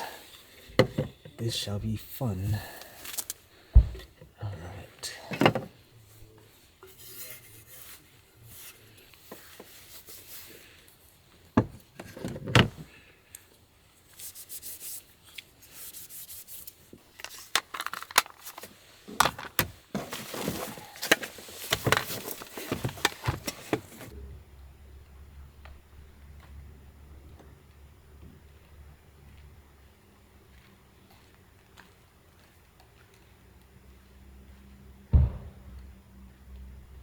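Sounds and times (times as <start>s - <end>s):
dishes knocking and clinking: 0.7s - 1.4s
rustling: 14.1s - 24.1s.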